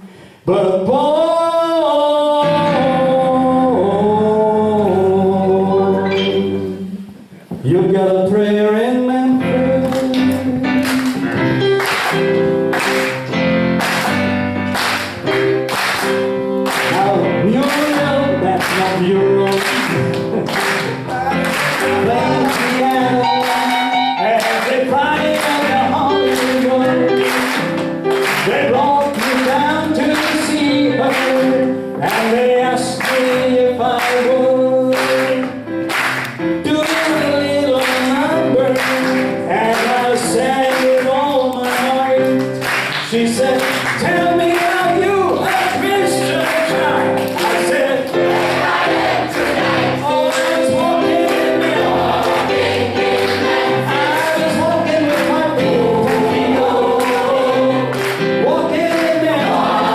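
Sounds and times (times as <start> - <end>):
instrumental accompaniment: 2.4 - 7.6, 9.3 - 59.9
vocal group singing: 16.8 - 35.6, 36.6 - 42.4, 43.0 - 59.9.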